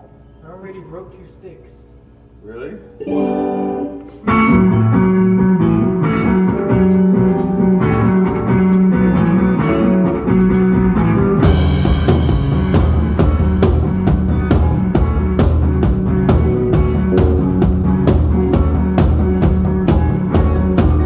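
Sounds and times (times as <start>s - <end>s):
rock band playing live: 3.1s - 21.0s
cymbal crash: 11.4s - 16.0s.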